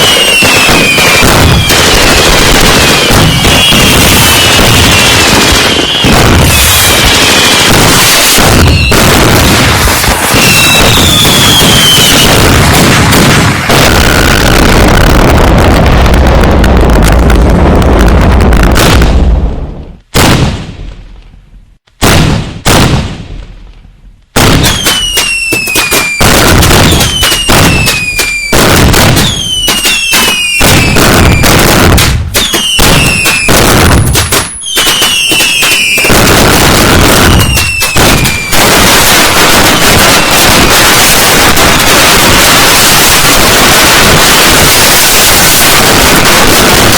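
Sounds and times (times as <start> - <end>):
whistling firework shells: 0.0 - 14.8, 24.4 - 46.9
firework booms: 0.0 - 46.9
fireworks bangs and crackle: 0.0 - 46.9.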